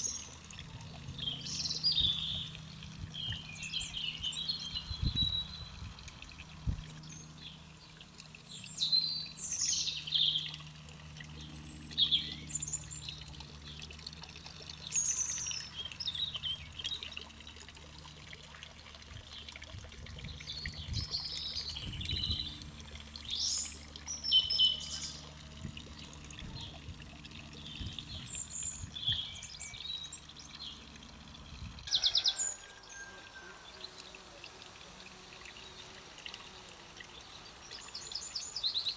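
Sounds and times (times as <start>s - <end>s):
low steady hum: 0.0s - 31.9s
birds singing and chirping: 1.1s - 5.9s, 8.4s - 10.7s, 11.3s - 13.8s, 14.4s - 17.2s, 20.2s - 25.3s, 27.6s - 33.0s.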